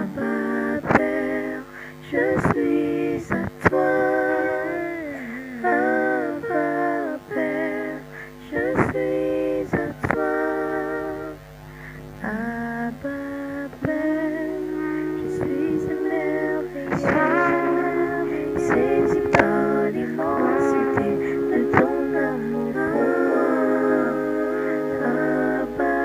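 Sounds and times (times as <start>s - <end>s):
person singing long gliding notes: 0.0s - 11.4s, 12.2s - 26.0s
low drone: 13.8s - 26.0s.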